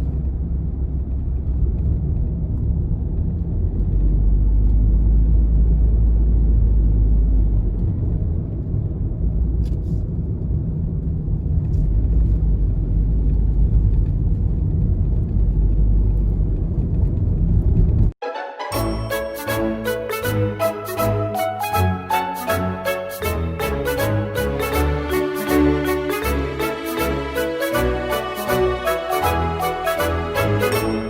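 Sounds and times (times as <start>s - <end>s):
car engine and road noise: 0.0s - 18.2s.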